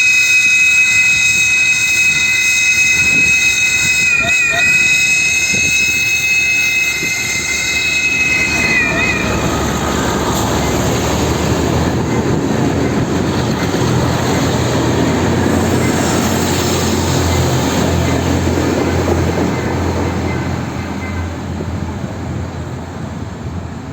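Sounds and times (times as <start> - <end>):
train horn chord: 0.0 - 9.7
train rumbling by: 0.0 - 23.9.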